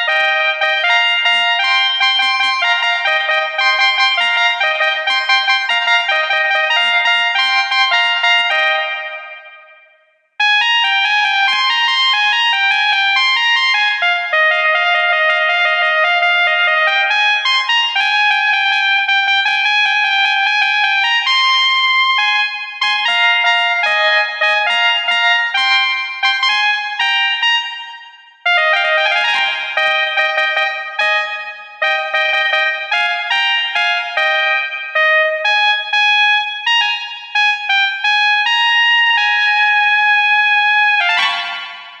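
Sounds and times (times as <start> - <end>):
multi-tone bus horn melody: 0.0 - 9.8, 22.2 - 42.0.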